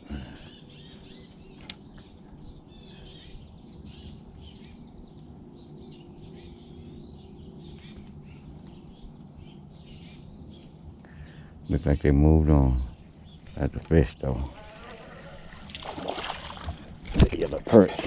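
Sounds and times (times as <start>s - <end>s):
songbirds chirping: 0.0s - 18.0s
sharp click: 1.6s - 1.8s
high-pitched insect drone: 2.5s - 17.6s.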